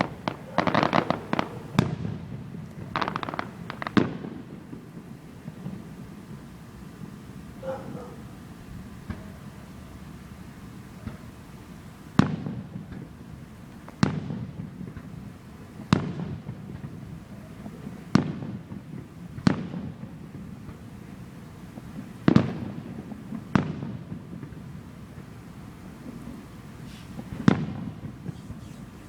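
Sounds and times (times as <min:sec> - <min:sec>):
firework shells booming: 0:00.0 - 0:07.6, 0:21.7 - 0:29.0.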